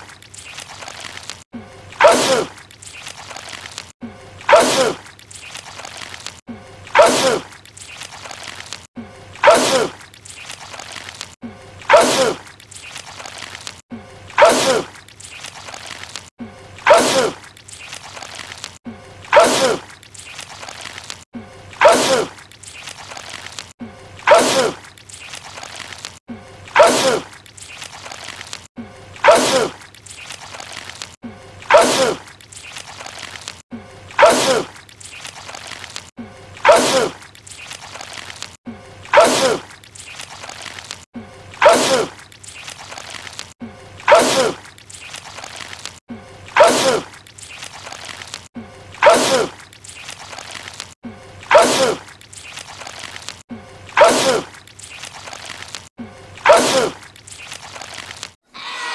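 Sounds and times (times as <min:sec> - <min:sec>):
man sneezing: 0:44.1 - 0:44.6, 0:46.6 - 0:47.1, 0:56.4 - 0:57.0.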